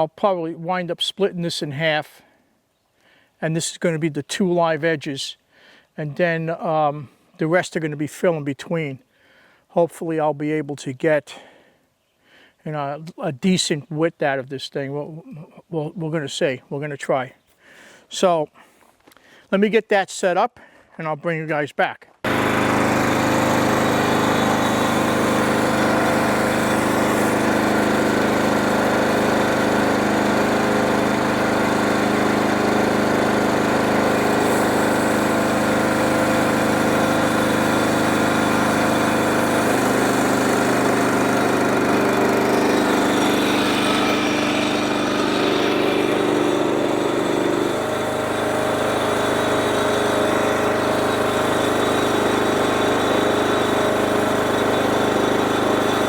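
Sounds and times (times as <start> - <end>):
sawmill machine drone: 22.2 - 56.0.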